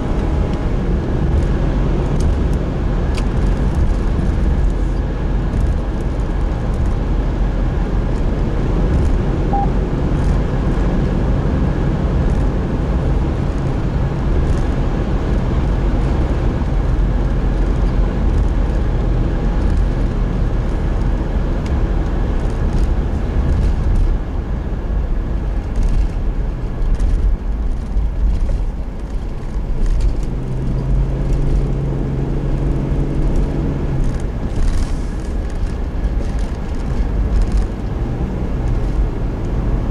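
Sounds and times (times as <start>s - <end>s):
engine and road rumble: 0.0s - 39.9s
low steady drone: 8.0s - 14.4s.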